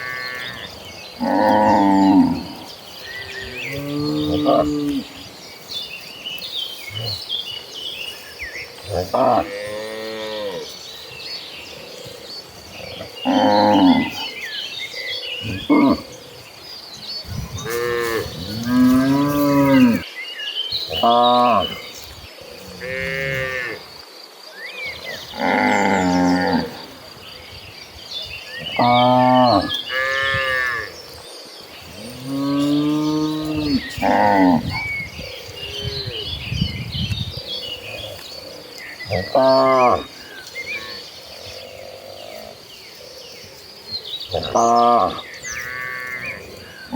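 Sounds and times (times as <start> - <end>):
cattle mooing: 32.2 - 34.8.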